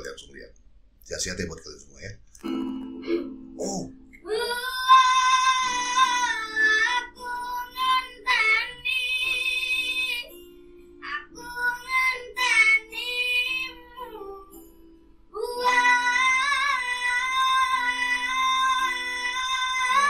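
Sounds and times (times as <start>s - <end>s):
acoustic guitar: 2.3s - 20.0s
boy singing: 4.2s - 10.4s, 11.0s - 14.6s, 15.4s - 20.0s.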